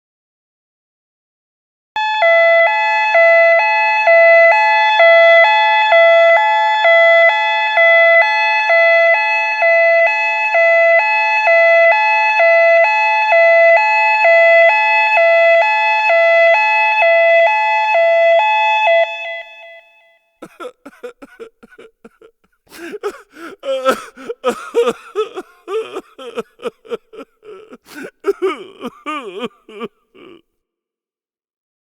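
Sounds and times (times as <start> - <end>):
two-tone emergency siren: 2.0 - 20.2.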